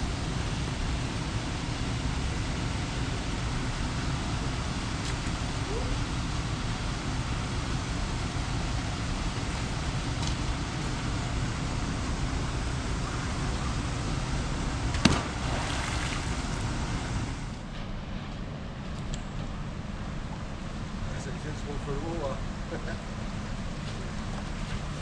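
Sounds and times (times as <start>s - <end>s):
shallow river rushing: 12.3s - 17.4s
sharp knock: 15.0s - 15.3s.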